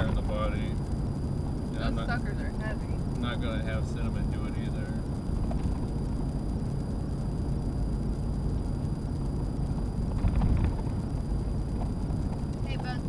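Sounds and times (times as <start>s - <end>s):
vehicle bump: 0.0s - 1.0s, 3.8s - 6.1s, 10.0s - 13.0s
engine and tyre rumble in cab: 0.0s - 13.0s.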